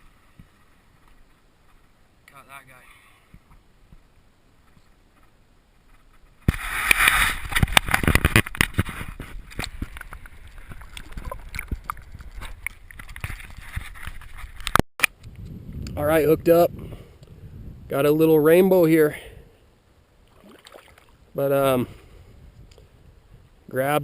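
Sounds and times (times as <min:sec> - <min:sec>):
water sloshing and splashing: 0:09.8 - 0:14.7, 0:20.2 - 0:21.2.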